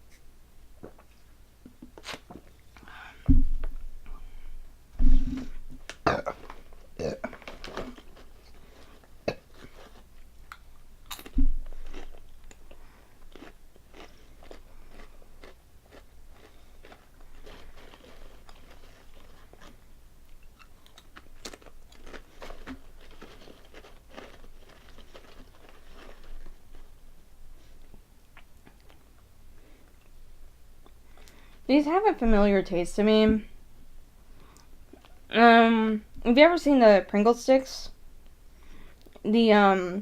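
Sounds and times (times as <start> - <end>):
loud thud: 3.3 - 3.6, 5.0 - 5.5
crunching potato chips: 6.3 - 27.0.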